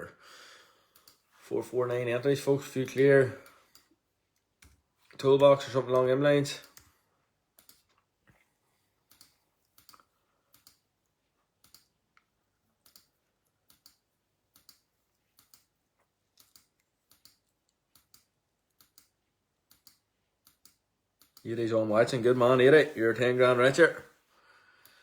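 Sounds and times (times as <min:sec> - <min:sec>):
faint computer clicks: 0:00.9 - 0:01.2.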